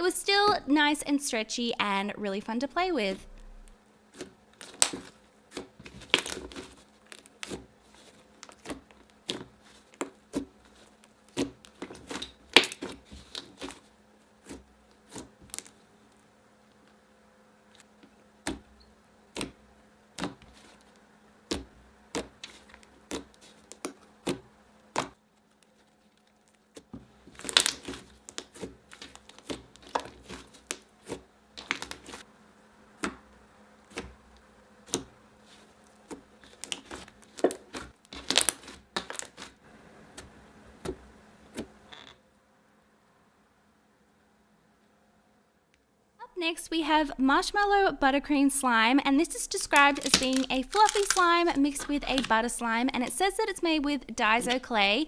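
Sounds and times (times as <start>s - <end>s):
slime clicking and popping: 49.6s - 52.3s.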